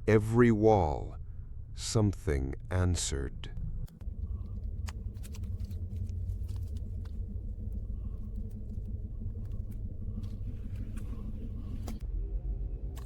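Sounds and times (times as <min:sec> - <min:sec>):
deep steady rumble: 0:00.0 - 0:13.0
faint clicks and ticks: 0:03.6 - 0:12.0.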